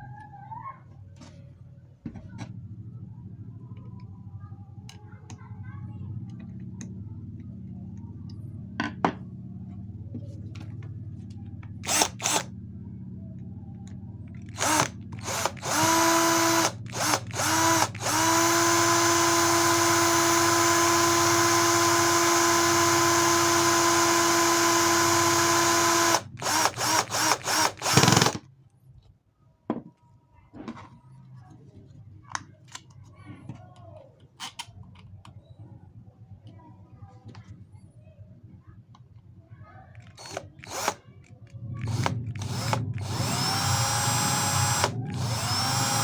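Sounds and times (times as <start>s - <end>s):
electric motor pump whining: 11.8s - 12.5s, 14.5s - 28.4s, 40.2s - 41.0s, 41.8s - 46.0s.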